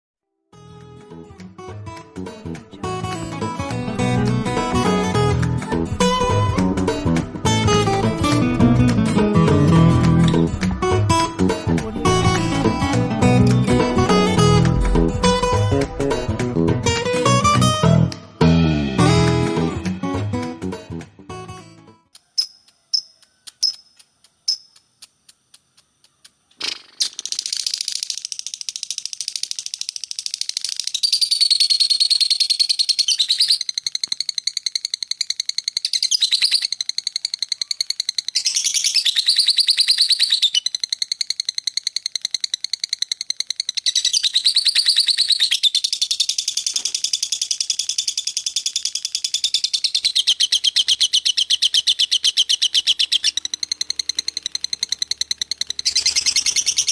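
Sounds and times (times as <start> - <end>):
lovebird chirping and trilling: 27.0 - 56.9.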